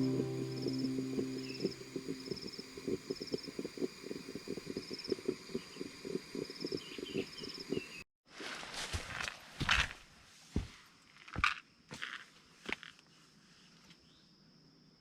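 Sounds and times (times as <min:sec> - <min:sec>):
insects trilling: 0:00.0 - 0:08.0.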